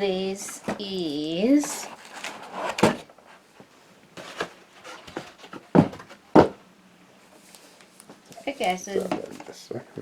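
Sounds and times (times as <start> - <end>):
cardboard packaging handled: 1.5 - 3.4, 4.1 - 6.6
dull knocks and scuffs: 5.1 - 6.6.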